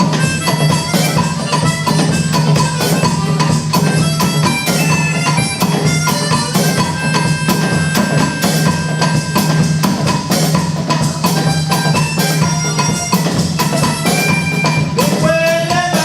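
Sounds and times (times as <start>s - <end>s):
percussion music: 0.0s - 16.0s.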